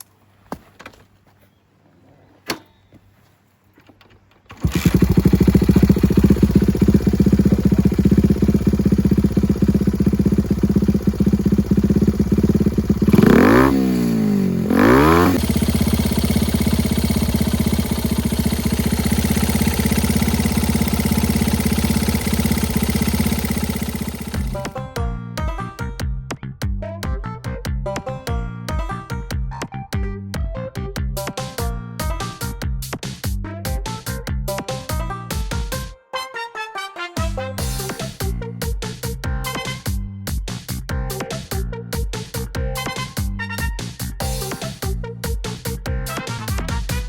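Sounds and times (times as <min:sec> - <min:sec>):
engine revving: 0:04.5 - 0:24.8
scooter engine starting and idling: 0:04.5 - 0:24.8.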